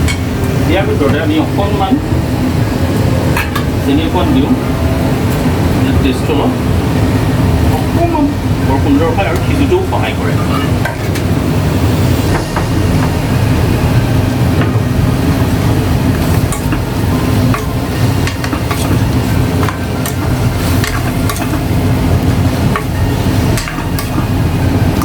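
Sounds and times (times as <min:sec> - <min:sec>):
steady low hum: 0:00.0 - 0:25.0
chicken sizzling in a pan: 0:11.0 - 0:25.0.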